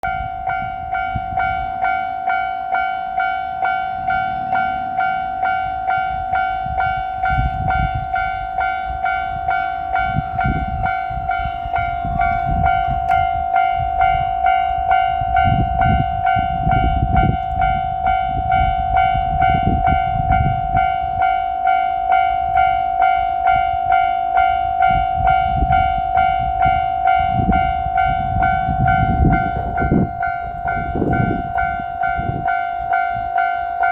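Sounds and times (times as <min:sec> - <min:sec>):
diesel train rumble: 0:00.0 - 0:33.9.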